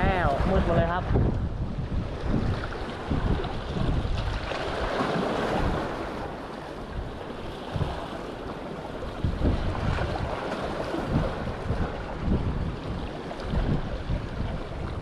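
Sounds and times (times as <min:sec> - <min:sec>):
surf washing onto beach: 0:00.0 - 0:15.0
wind gusting over microphone: 0:00.0 - 0:15.0.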